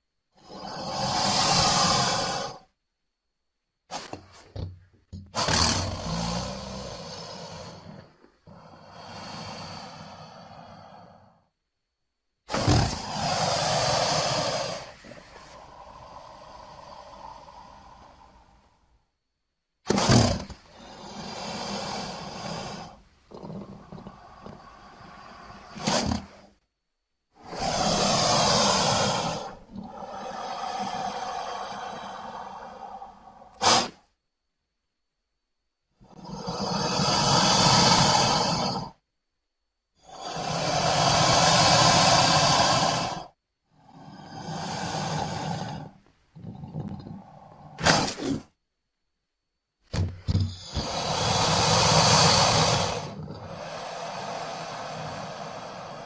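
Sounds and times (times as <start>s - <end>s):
hiss-like creature sound: 0.0s - 2.8s, 5.4s - 11.4s, 12.5s - 18.9s, 19.9s - 26.6s, 27.4s - 34.1s, 36.0s - 39.0s, 40.0s - 48.5s, 50.6s - 56.0s
rough drawn-out breath: 5.4s - 11.6s, 12.5s - 19.1s, 19.9s - 26.6s, 27.4s - 34.2s, 36.0s - 39.0s, 40.0s - 48.6s, 50.0s - 56.0s
low rasping creature call: 12.5s - 18.6s, 27.4s - 34.0s, 36.0s - 39.0s, 40.0s - 48.4s, 50.6s - 56.0s
sharp burst of breath: 12.5s - 18.9s, 27.4s - 34.2s, 36.0s - 39.0s, 40.0s - 46.0s, 47.3s - 48.6s, 50.5s - 56.0s.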